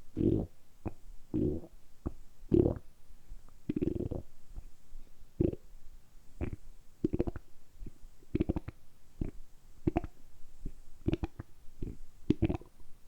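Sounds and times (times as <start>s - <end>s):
stomach gurgling: 11.1s - 12.7s.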